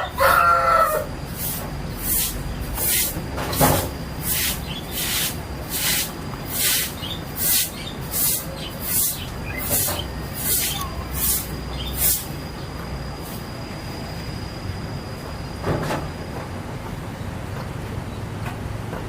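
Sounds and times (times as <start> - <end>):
rooster crowing: 0.0 - 1.2
chicken hissing breaths: 1.3 - 3.2, 4.2 - 12.4.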